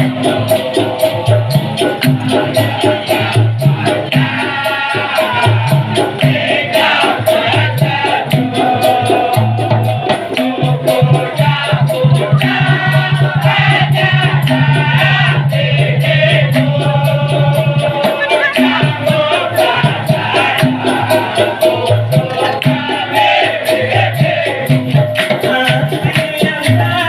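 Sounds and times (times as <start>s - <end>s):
group singing in unison: 0.0s - 27.0s
maracas shaker rhythm: 0.0s - 27.0s.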